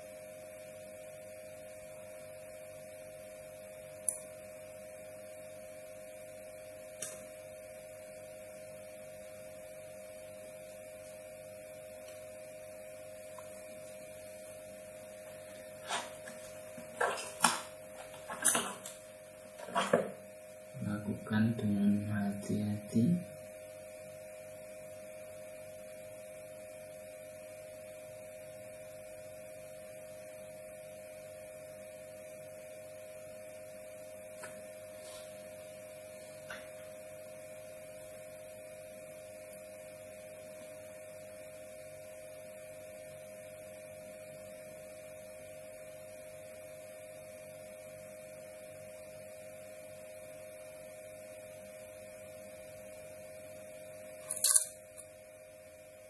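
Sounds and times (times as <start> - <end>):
electrical mains hum: 0.0 - 56.0.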